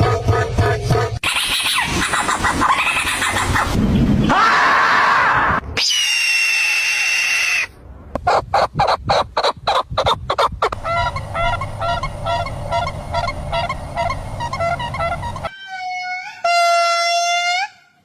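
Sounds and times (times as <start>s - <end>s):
bird harsh rasping calls: 8.3s - 15.5s
bird honking calls: 10.8s - 15.5s.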